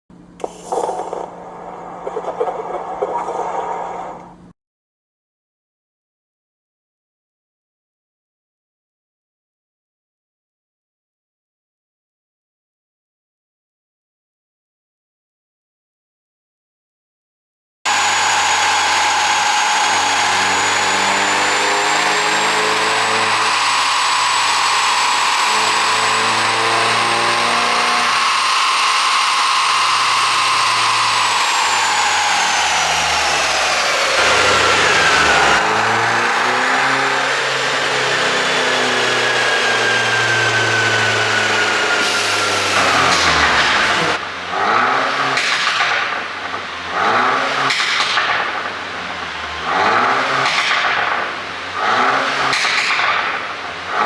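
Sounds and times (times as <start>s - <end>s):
car engine running: 17.9s - 44.6s.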